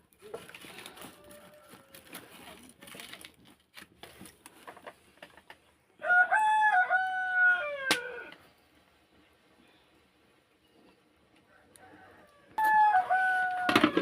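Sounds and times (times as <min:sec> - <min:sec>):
rooster crowing: 0:00.4 - 0:02.1, 0:06.0 - 0:08.4, 0:11.5 - 0:14.0.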